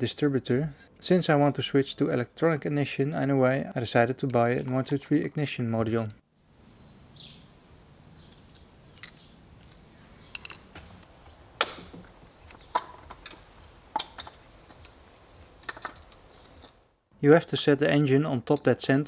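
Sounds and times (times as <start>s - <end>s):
metallic clicks and knocks: 9.0s - 16.8s.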